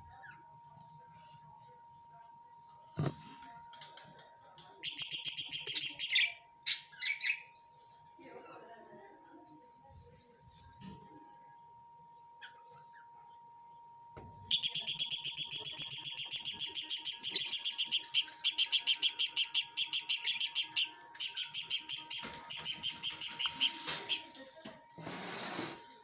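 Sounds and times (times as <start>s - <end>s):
parrot chirping rapidly: 4.8s - 7.6s, 14.5s - 24.3s.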